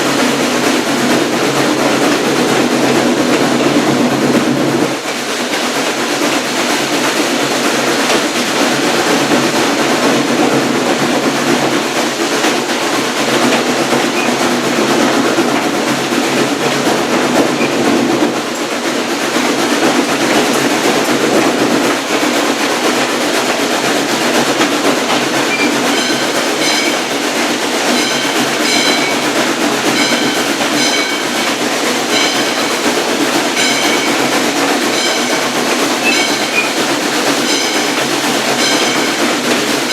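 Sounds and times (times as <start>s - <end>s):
train rumble and rail noise: 0.0s - 39.9s
ringing bell-like tone: 25.5s - 27.1s, 27.9s - 29.3s, 29.9s - 31.5s, 32.1s - 32.8s, 33.6s - 34.3s, 34.9s - 36.8s, 37.4s - 39.9s.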